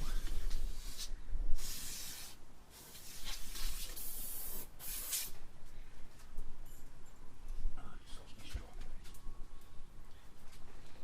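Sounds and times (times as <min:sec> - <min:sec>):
aerosol spray can hissing: 0:00.3 - 0:05.4.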